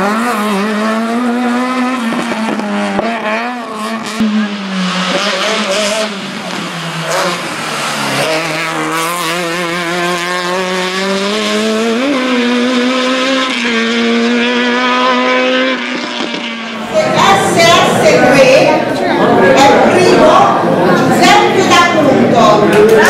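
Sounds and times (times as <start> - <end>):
car engine revving high: 0.0 - 18.4.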